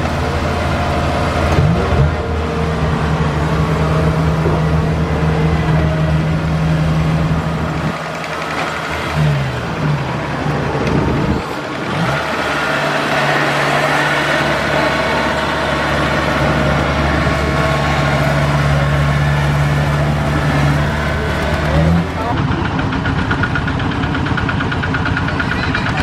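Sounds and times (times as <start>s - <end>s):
harvester engine running: 0.0s - 26.0s.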